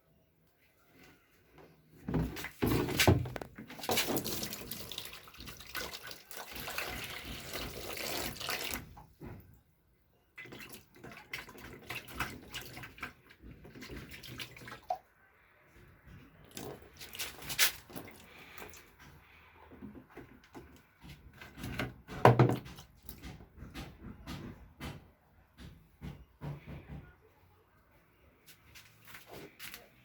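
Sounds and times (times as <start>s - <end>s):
tap water running into sink: 3.4s - 9.0s
knocks: 22.1s - 27.2s.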